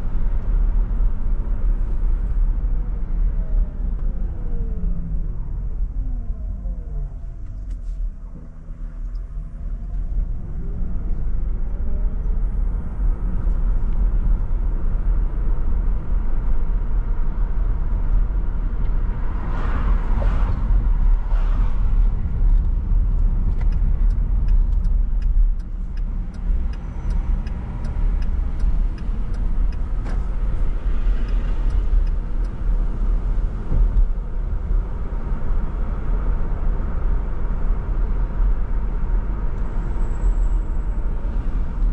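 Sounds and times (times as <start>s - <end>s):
car engine and road noise: 0.0s - 41.9s
light regular ticks: 22.6s - 32.6s.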